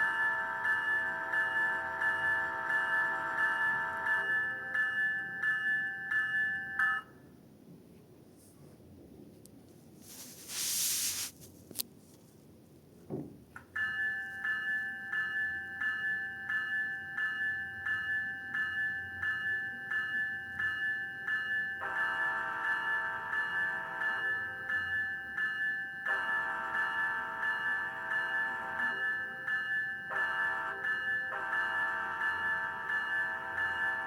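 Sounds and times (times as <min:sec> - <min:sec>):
locomotive bell ringing: 0:00.0 - 0:07.0, 0:13.8 - 0:34.0
short hiss: 0:10.1 - 0:11.5.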